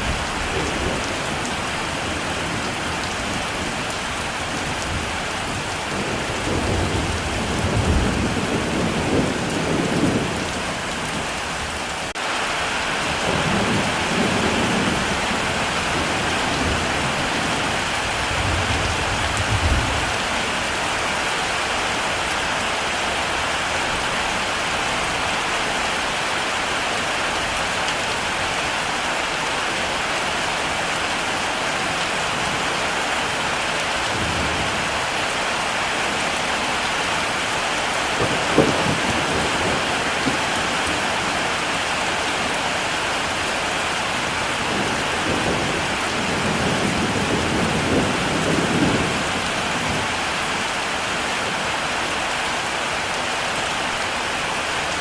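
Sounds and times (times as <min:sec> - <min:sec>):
heavy rain pouring: 0:00.0 - 0:55.0
low thunder rumbling: 0:04.6 - 0:11.4, 0:13.2 - 0:20.4, 0:38.2 - 0:41.1, 0:44.4 - 0:50.1.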